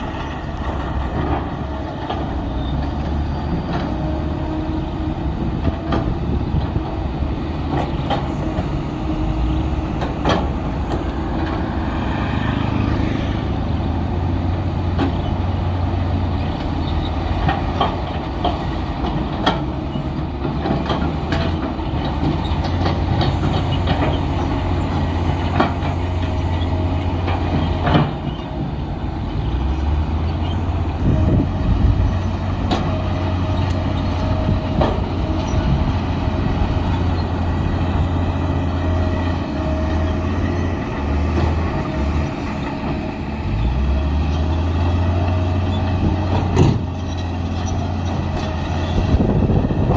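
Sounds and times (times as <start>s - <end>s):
diesel engine rumbling: 0.0s - 49.9s
metallic clanks and knocks: 45.8s - 48.7s.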